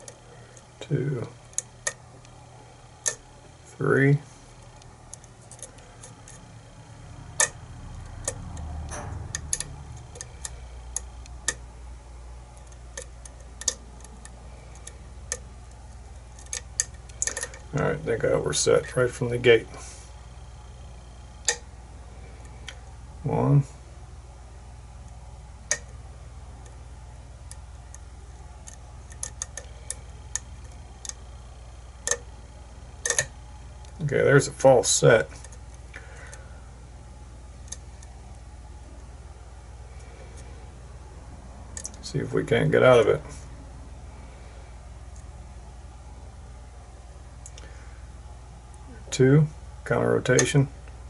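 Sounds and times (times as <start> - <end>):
steady low hum: 0.0 - 51.0
sharp pin ticks: 3.0 - 3.3, 7.3 - 11.7, 21.4 - 21.7, 25.6 - 26.0, 33.0 - 34.0.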